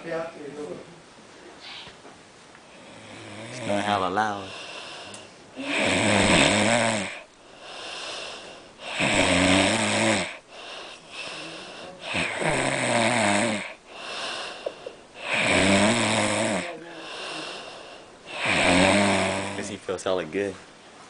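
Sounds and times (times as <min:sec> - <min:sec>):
quiet breathing: 0:02.6 - 0:06.1, 0:07.0 - 0:09.2, 0:10.2 - 0:19.8
man snoring loudly: 0:02.8 - 0:11.4, 0:12.0 - 0:14.6, 0:15.2 - 0:19.8.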